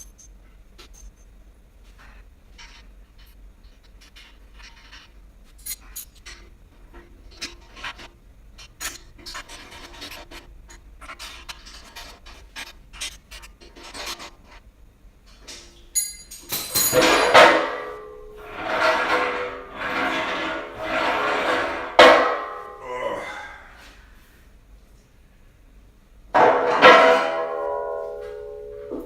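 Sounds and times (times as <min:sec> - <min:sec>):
metal parts clicking and rattling: 0:00.0 - 0:01.3, 0:02.6 - 0:06.5, 0:15.3 - 0:17.6
metal rasping and scraping: 0:02.6 - 0:14.6, 0:16.8 - 0:22.8.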